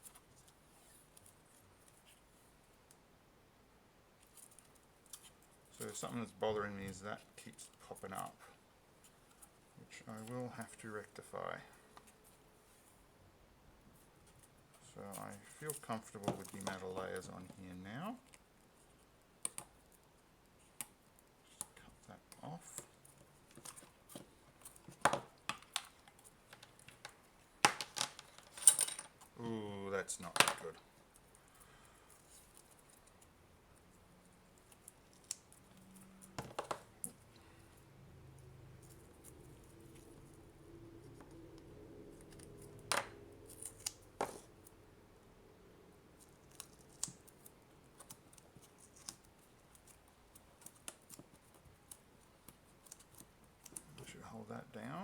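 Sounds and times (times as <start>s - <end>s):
tape rustling: 14.0s - 44.8s, 46.1s - 55.0s.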